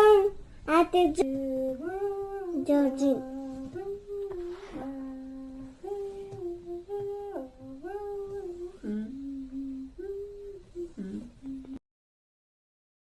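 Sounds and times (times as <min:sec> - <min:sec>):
person humming a melody: 0:01.0 - 0:11.8.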